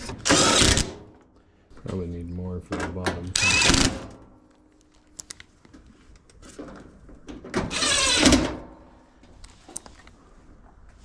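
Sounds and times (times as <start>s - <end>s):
loud mechanical burst: 0.1s - 1.0s, 3.4s - 4.1s.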